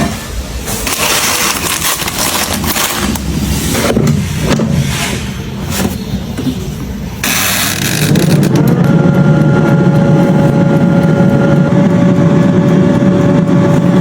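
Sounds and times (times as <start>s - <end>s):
motor droning with whine: 7.2s - 14.0s.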